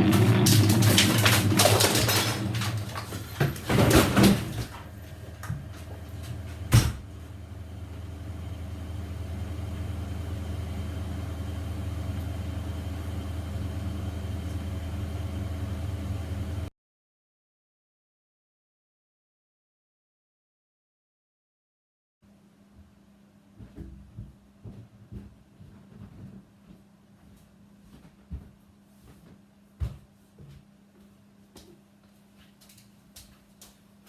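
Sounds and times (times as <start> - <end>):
door and cupboard rustling and knocking: 0.0 - 7.1
steady low hum: 0.0 - 16.7.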